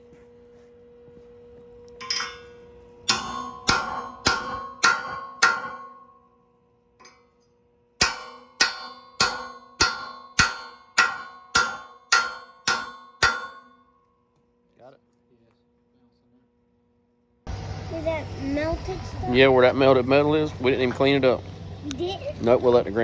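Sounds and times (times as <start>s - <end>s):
hammer striking steel: 2.0s - 6.4s, 8.0s - 14.0s.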